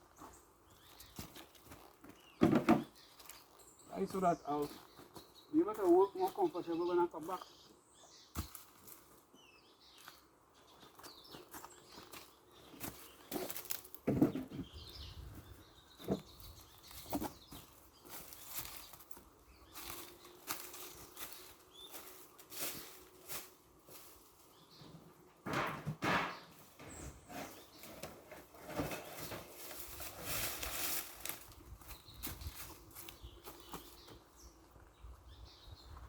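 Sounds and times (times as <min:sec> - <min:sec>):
objects knocking: 0:02.4 - 0:02.9, 0:25.4 - 0:27.3
rustling of handled objects: 0:26.6 - 0:34.2.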